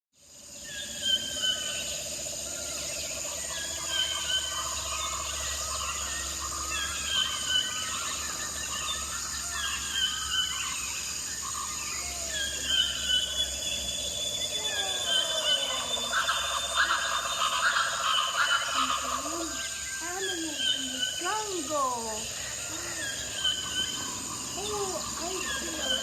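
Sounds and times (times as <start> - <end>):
insects chorus: 0.2 - 26.0
bird calls: 0.6 - 26.0.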